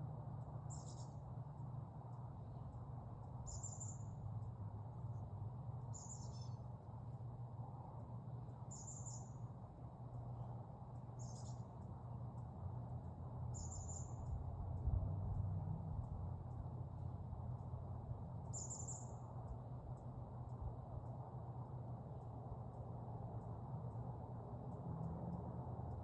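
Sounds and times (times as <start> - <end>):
steady low rumble: 0.0 - 26.0
small bird calling: 0.7 - 1.2, 3.3 - 4.2, 5.8 - 6.7, 8.6 - 9.4, 11.1 - 11.7, 13.5 - 14.4, 18.4 - 19.2.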